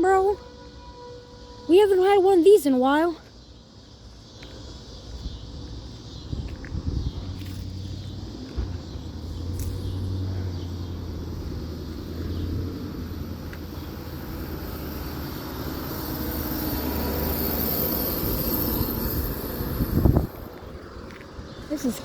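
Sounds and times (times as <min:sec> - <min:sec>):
low outdoor rumble: 0:05.5 - 0:22.0.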